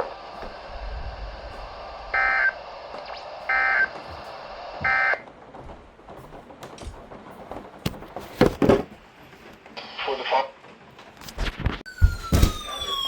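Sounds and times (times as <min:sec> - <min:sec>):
broadcast hiss: 0:00.0 - 0:05.2
warbling digital data tones: 0:00.8 - 0:03.9.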